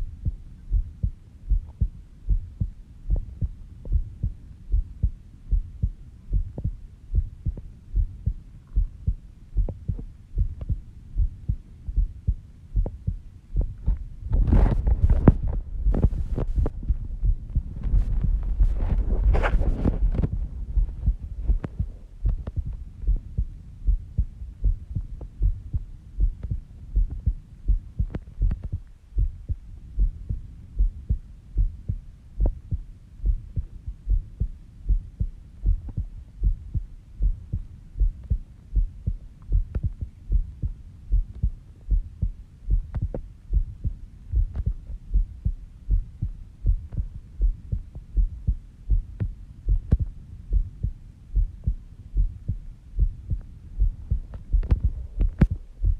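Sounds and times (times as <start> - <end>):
heartbeat thumps: 0.0 - 55.9.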